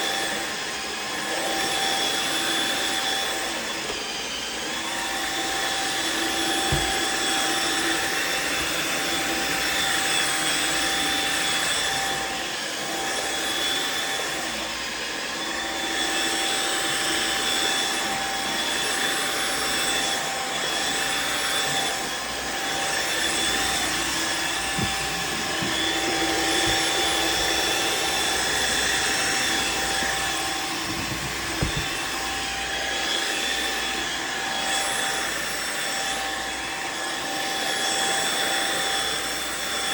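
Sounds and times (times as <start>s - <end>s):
floor washer motor whine: 0.0s - 39.9s
low knocks: 24.7s - 26.9s, 30.8s - 32.1s.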